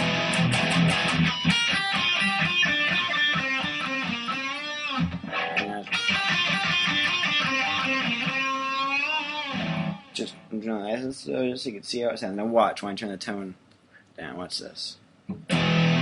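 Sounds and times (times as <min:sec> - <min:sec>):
electric guitar lead with bends: 0:00.0 - 0:10.2, 0:15.4 - 0:16.0.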